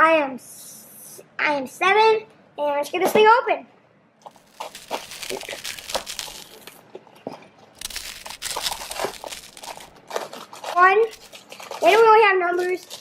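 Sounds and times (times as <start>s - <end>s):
cardboard box tearing and crinkling: 4.3s - 6.8s, 7.8s - 12.0s.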